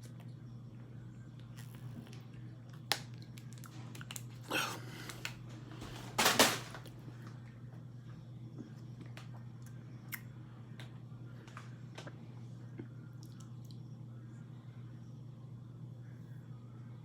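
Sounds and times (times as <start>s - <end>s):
crunching while chewing: 1.4s - 5.4s.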